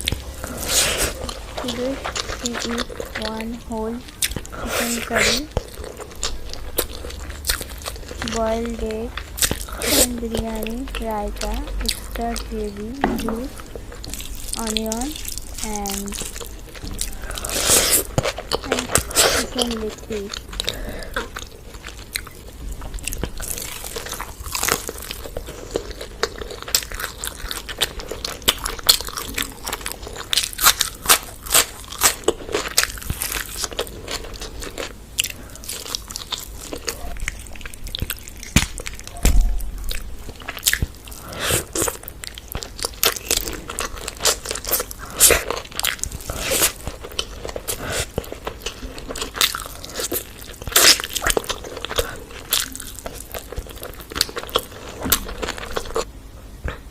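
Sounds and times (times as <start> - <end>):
chewing and crunching food: 0.0 - 56.9
heavy thump: 39.2 - 39.8.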